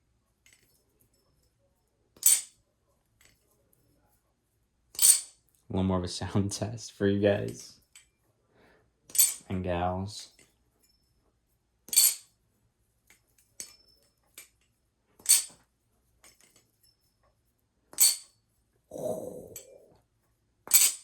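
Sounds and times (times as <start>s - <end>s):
metallic clacks of knife handles: 2.2s - 2.5s, 9.1s - 9.5s, 13.1s - 14.6s, 15.2s - 15.6s.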